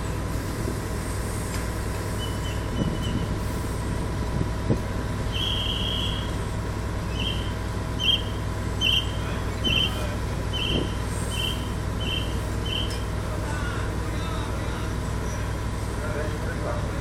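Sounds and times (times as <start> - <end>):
diesel engine running: 0.0 - 17.0
electronic warning beeps: 7.1 - 13.0.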